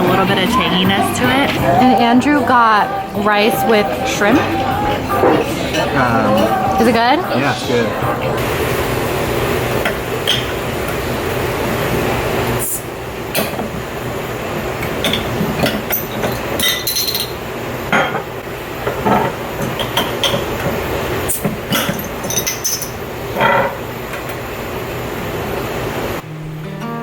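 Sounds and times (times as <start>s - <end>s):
background hubbub: 0.0s - 10.2s
cutlery and dishes clinking: 0.1s - 7.0s, 14.8s - 23.8s.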